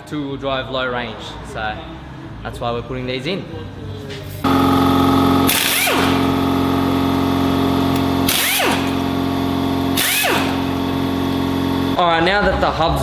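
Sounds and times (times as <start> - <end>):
power drill running: 4.4 - 12.0.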